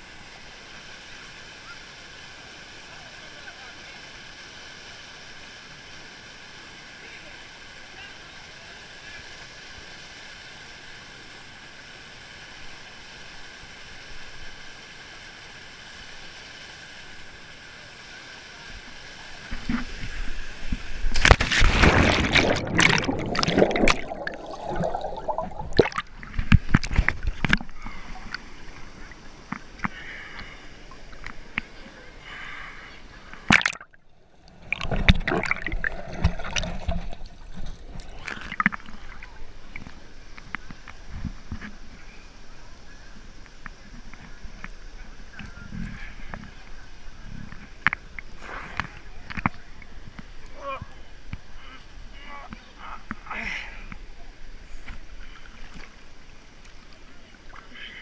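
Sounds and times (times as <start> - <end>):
rushing water: 0.0 - 58.0
water gurgling: 19.2 - 42.0
water splashing and sloshing: 19.5 - 31.8, 33.3 - 41.8.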